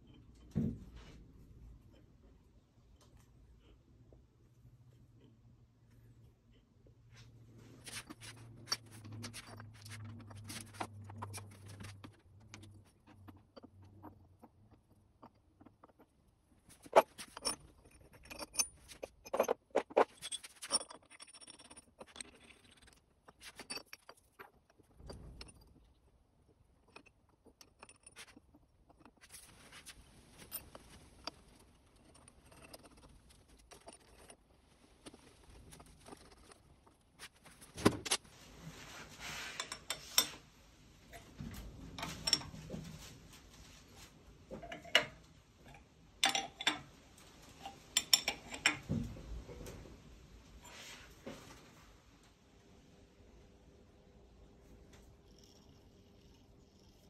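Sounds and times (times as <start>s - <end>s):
metal parts and tools clinking: 16.7s - 25.8s.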